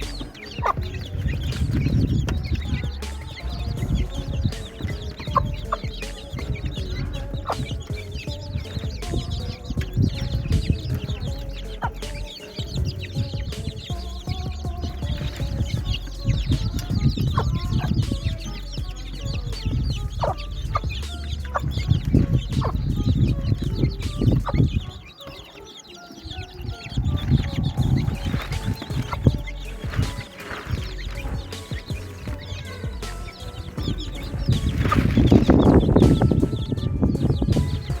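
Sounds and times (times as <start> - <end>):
low rumble: 0.0 - 25.0, 26.8 - 38.0
chickens clucking: 0.0 - 38.0
chicks cheeping: 0.0 - 38.0.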